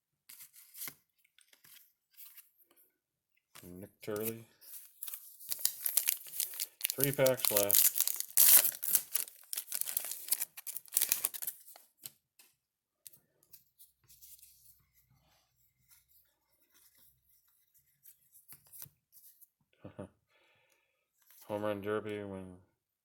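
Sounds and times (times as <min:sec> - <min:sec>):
cards clicking and rustling: 0:03.6 - 0:12.2
wrapper tearing and crinkling: 0:04.1 - 0:11.8.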